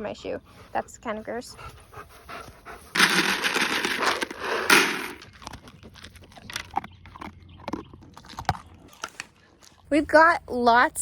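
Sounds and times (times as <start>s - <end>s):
dry kibble rattling: 3.0s - 8.4s
dogs crunching kibble: 3.0s - 9.9s.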